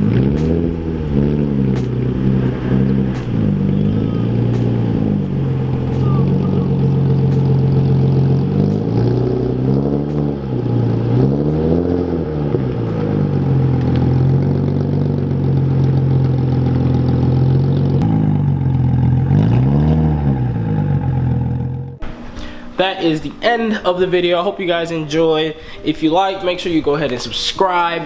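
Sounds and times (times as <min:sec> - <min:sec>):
car engine revving: 0:00.0 - 0:22.1.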